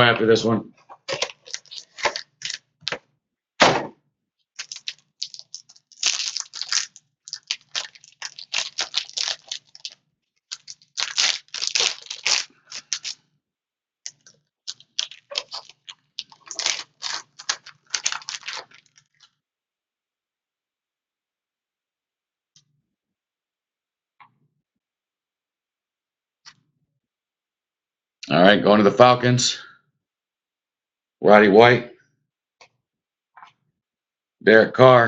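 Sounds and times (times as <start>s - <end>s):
plastic wrap tearing and crinkling: 1.1s - 3.0s, 4.6s - 13.2s, 14.1s - 19.3s.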